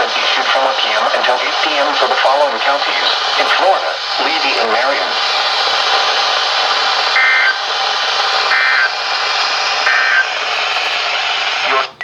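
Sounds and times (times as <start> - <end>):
radio static hiss: 0.0 - 12.0
two-tone data bursts: 7.1 - 7.7, 8.5 - 9.0, 9.8 - 11.0.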